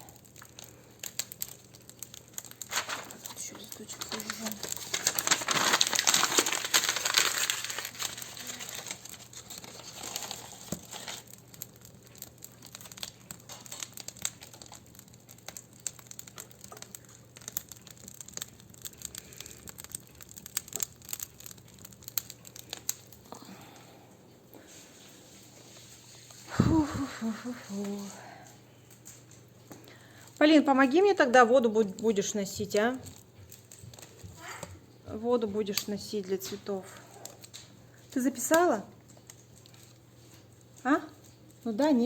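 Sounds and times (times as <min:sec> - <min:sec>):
wood fire crackling: 0:00.0 - 0:42.0
dry leaves rustling by hand: 0:02.7 - 0:11.3.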